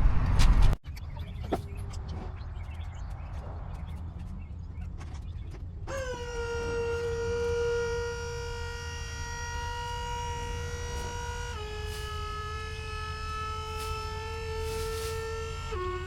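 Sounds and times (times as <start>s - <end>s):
skid steer engine rumbling: 1.1s - 16.0s
high-pitched whine: 5.9s - 16.0s.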